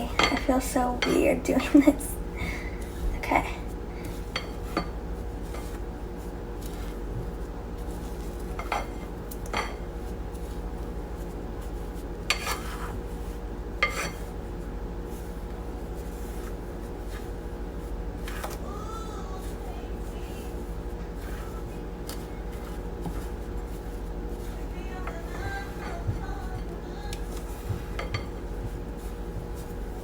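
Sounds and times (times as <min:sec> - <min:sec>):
spoon stirring dry ingredients: 0:03.7 - 0:14.4.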